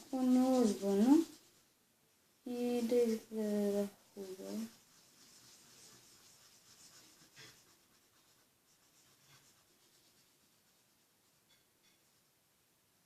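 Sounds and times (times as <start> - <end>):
marker scratching on paper: 0.0 - 1.6, 4.2 - 12.2.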